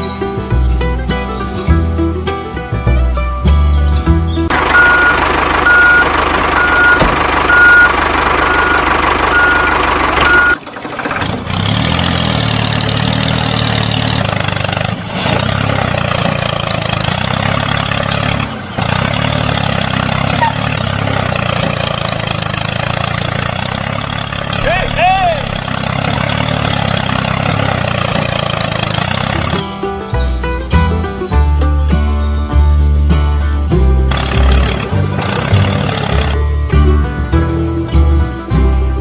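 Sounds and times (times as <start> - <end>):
heavy truck engine running: 0.0 - 39.0
reversing alarm beeping: 4.7 - 10.6.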